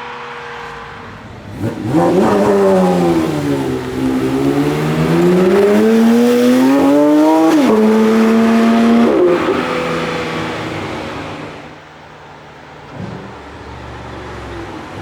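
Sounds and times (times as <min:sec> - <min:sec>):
car engine accelerating hard: 0:00.0 - 0:11.8.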